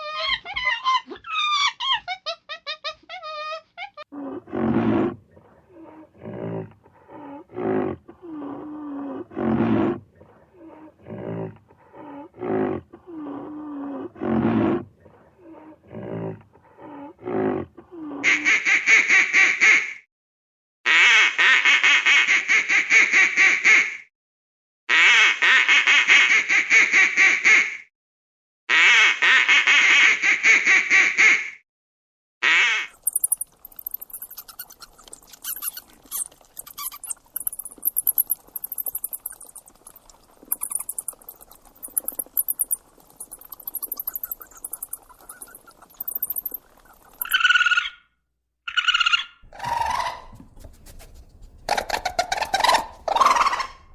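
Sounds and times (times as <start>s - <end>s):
short pitched animal calls: 32.5s - 48.0s, 48.7s - 53.9s
long pulsing animal calls: 32.7s - 48.0s, 48.7s - 50.4s, 51.3s - 53.9s.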